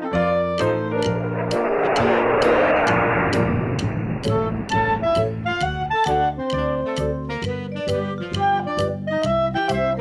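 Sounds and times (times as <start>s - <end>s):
dense rushing noise: 0.8s - 5.8s
music with steady beat: 3.4s - 10.0s.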